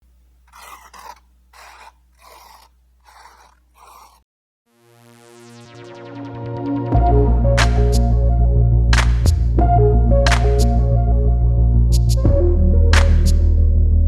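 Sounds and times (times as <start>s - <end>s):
brush scraping on canvas: 0.5s - 4.2s
soft background music: 6.7s - 14.0s.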